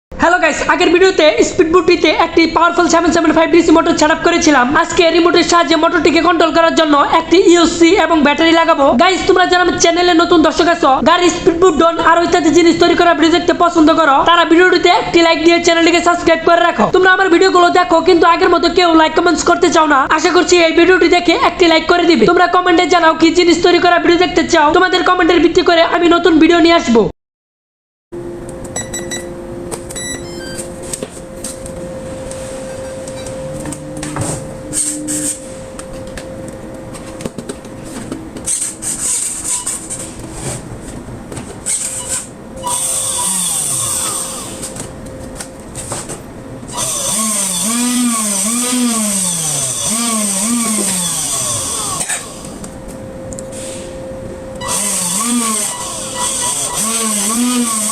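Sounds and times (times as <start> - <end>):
electric motor whining: 41.7 - 44.9, 46.7 - 52.6, 54.6 - 57.9.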